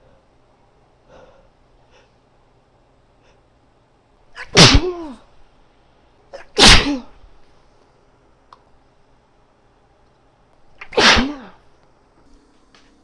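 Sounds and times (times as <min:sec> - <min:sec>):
woman sneezing: 0:04.4 - 0:05.3, 0:06.3 - 0:07.2, 0:10.8 - 0:11.6.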